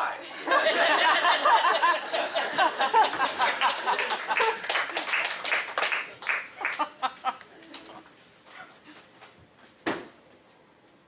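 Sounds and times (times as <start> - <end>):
audience laughing: 0.2 - 5.2, 6.5 - 7.5
people clapping: 2.4 - 7.9.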